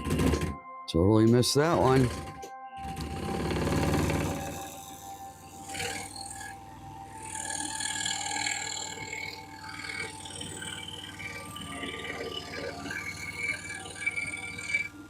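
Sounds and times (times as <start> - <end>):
music playing: 0.0 - 7.5
scroll saw cutting board: 1.7 - 6.6, 7.2 - 15.0.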